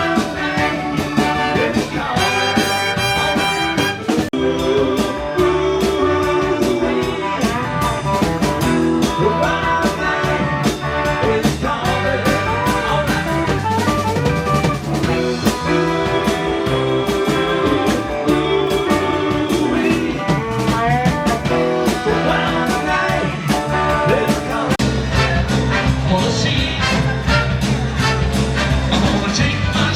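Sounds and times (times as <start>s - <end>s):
sustained horn lines: 0.0s - 4.3s
drum kit with rimshots: 0.0s - 29.9s
guitar: 0.0s - 29.9s.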